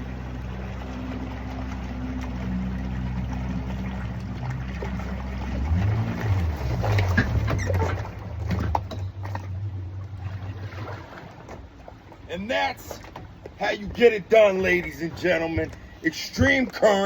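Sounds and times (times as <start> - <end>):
jet boat engine running: 0.0 - 17.0
sharp knocks and clunks: 6.9 - 9.5.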